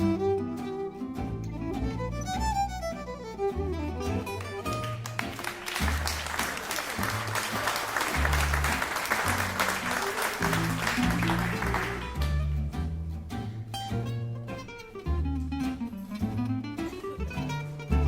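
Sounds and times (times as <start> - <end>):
double bass playing low notes: 0.0 - 6.4, 8.1 - 18.0
acoustic guitar accompaniment: 0.0 - 18.0
audience applauding: 4.3 - 12.4.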